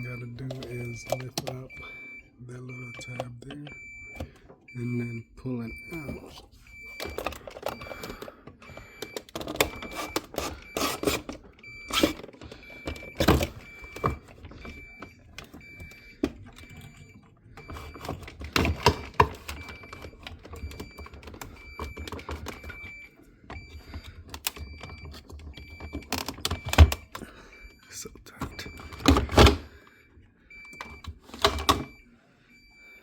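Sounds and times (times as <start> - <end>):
high electronic beep: 0.0 - 12.2
plastic clicks and rattles: 8.9 - 27.2.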